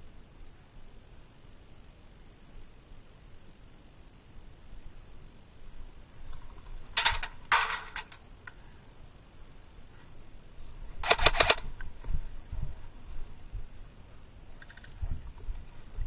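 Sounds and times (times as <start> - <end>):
airsoft gun rapid bursts: 11.0 - 11.6.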